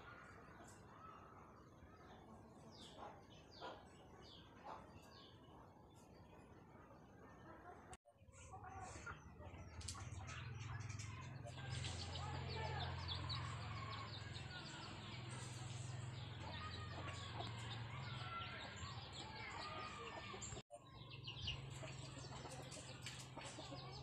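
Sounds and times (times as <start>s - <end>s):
birds chirping: 0.0s - 24.0s
chickens clucking: 8.5s - 20.6s, 21.6s - 24.0s.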